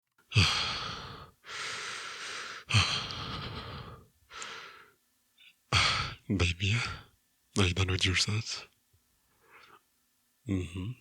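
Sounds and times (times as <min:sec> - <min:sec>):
man breathing heavily: 0:00.3 - 0:05.0.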